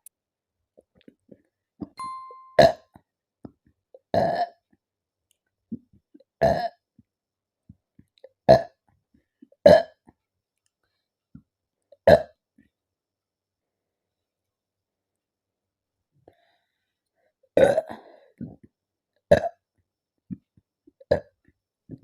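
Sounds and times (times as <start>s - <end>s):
short ding tone: 2.0s - 2.8s.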